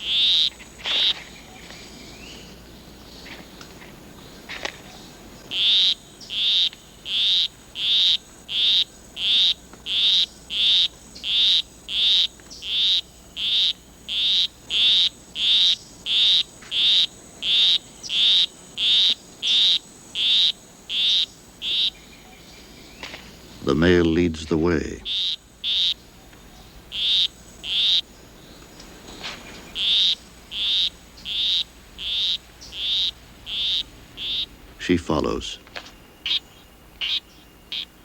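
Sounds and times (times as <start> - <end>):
frog short high-pitched calls: 0.0 - 1.2, 5.5 - 22.4, 24.6 - 28.1, 29.7 - 34.6, 35.2 - 38.0.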